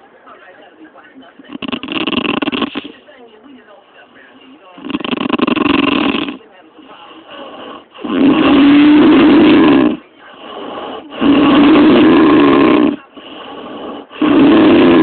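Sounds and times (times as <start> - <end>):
quiet breathing: 0.0 - 15.0
woman snoring: 1.5 - 2.9, 4.8 - 6.4, 7.0 - 15.0.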